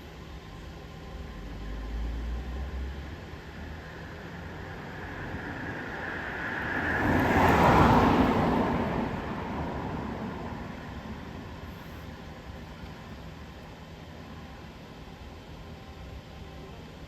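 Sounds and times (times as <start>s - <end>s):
vehicle passing by: 1.7s - 11.7s.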